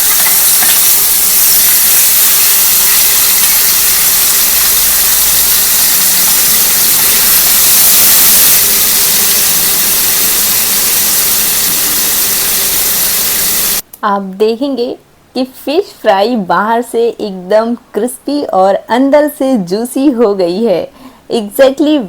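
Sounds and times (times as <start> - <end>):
fish sizzling in hot oil: 0.0 - 13.8.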